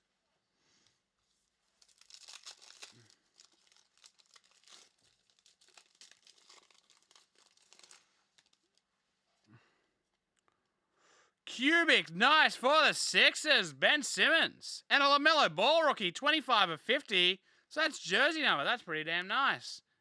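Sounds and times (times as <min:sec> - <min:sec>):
foil wrapper crinkling and tearing: 0:01.4 - 0:08.8.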